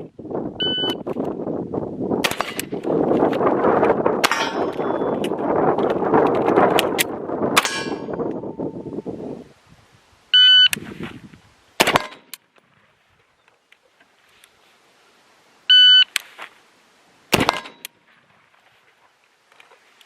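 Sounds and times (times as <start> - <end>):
shot timer beep: 0.6 - 1.0, 4.8 - 5.2, 10.4 - 10.8
gunshot: 2.2 - 2.6, 11.8 - 12.3, 17.3 - 17.8.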